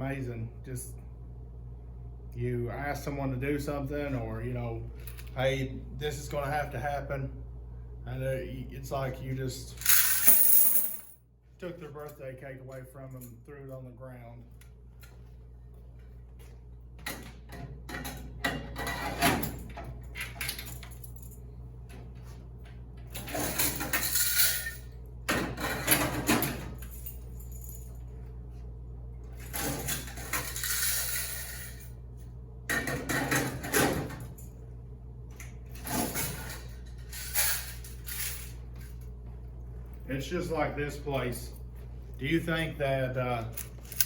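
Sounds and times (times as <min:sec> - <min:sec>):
steady low hum: 0:00.0 - 0:44.0
coins clinking: 0:09.8 - 0:11.2, 0:23.5 - 0:24.8, 0:30.3 - 0:31.9, 0:43.6 - 0:44.0.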